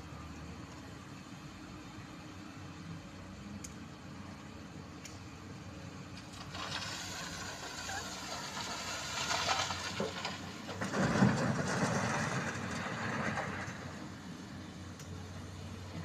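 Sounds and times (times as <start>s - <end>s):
bucket scraping through rocks: 6.5s - 12.8s.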